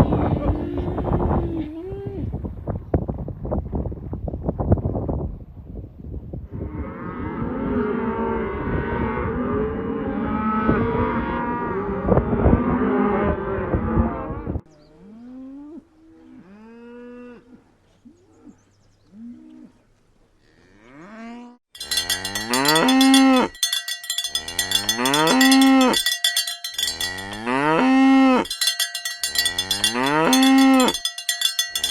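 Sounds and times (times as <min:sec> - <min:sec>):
high ringing tones: 0:21.8 - 0:31.9.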